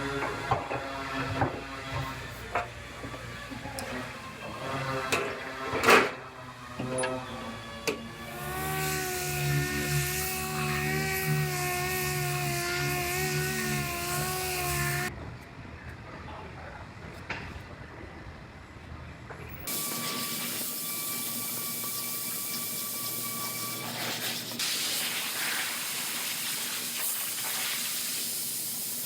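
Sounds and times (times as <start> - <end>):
power tool whining: 0.0 - 15.1, 19.6 - 24.6.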